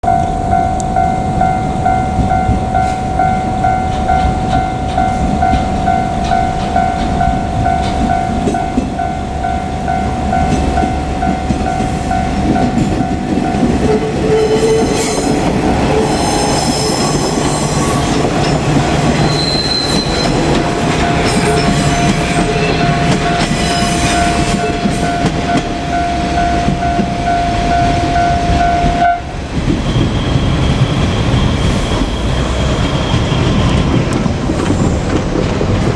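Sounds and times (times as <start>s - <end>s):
level-crossing warning bell: 0.0s - 34.4s
diesel railcar engine rumbling: 0.0s - 35.9s
train wheels clattering and squealing: 2.1s - 9.6s, 10.3s - 35.9s.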